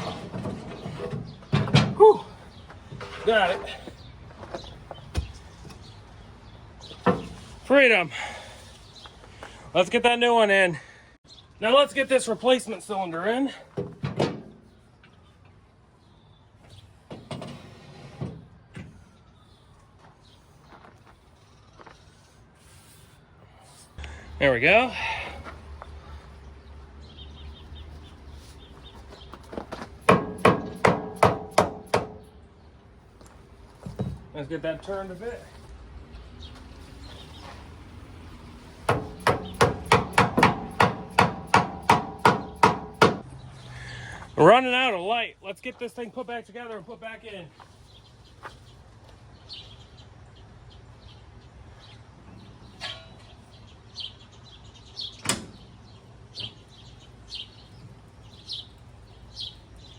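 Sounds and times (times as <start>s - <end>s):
heavy metal parts knocking: 30.0s - 32.3s, 38.9s - 43.2s
hammer striking steel: 30.1s - 32.3s, 38.9s - 43.2s.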